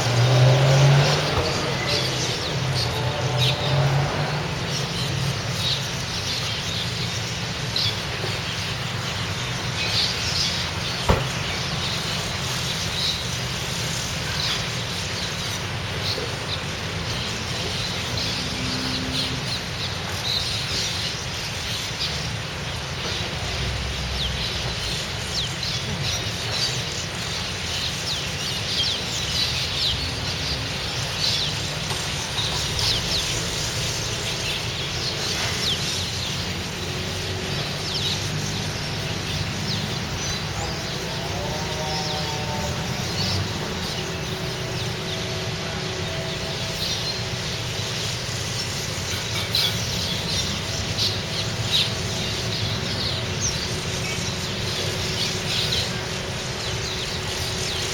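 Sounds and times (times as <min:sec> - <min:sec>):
flock of birds chirping: 0:00.0 - 0:57.9.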